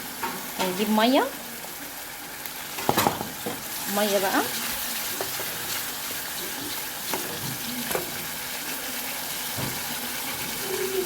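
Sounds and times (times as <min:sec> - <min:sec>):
sauce sizzling in a pot: 0:00.0 - 0:11.0.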